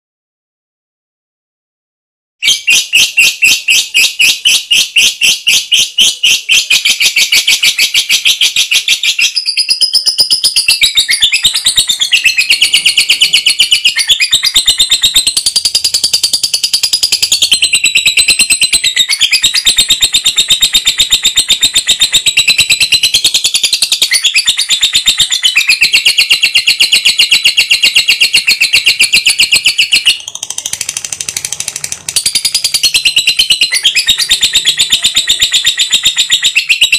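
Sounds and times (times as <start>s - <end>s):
bird chattering trill: 2.4s - 36.9s.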